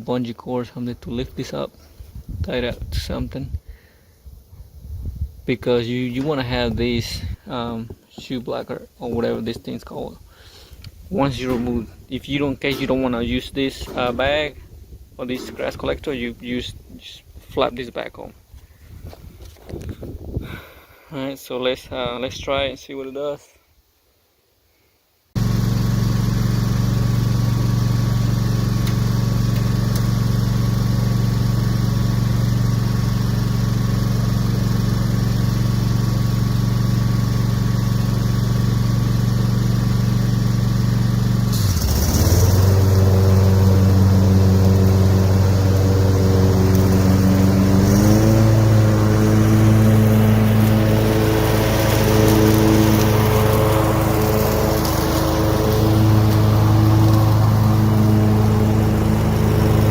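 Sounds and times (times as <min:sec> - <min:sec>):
mower engine running: 0:10.4 - 0:14.6, 0:25.4 - 0:59.9.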